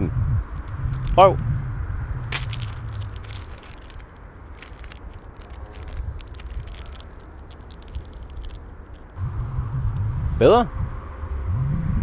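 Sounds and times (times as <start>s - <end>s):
low steady rumble: 0.0s - 12.0s
candy bar wrapper crackling: 0.9s - 1.3s, 2.3s - 9.2s.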